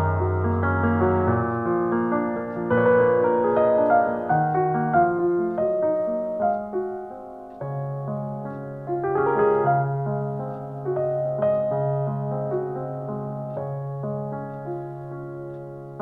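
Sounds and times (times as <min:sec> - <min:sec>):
solo piano piece: 0:00.0 - 0:16.0.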